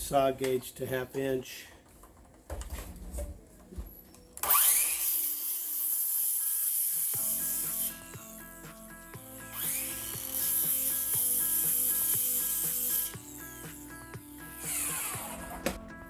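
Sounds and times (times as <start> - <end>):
circular saw cutting wood: 4.4 - 15.8
background music with steady beat: 6.8 - 16.0.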